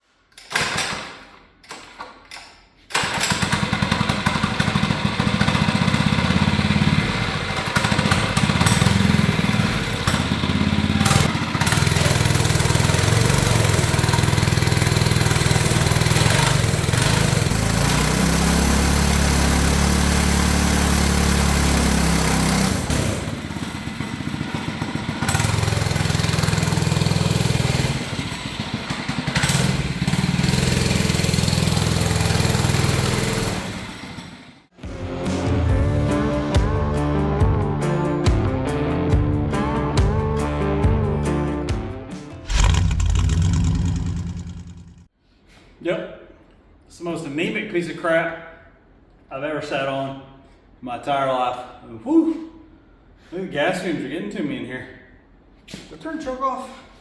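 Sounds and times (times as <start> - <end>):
engine cranking: 2.9 - 34.0, 42.4 - 45.1
small engine running loudly: 3.4 - 37.9, 42.4 - 45.1.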